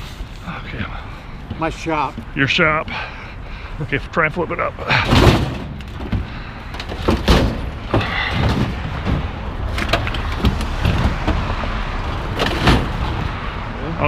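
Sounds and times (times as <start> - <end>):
scraping and rumbling: 4.8 - 13.8
knocks and thuds on metal: 4.9 - 13.4.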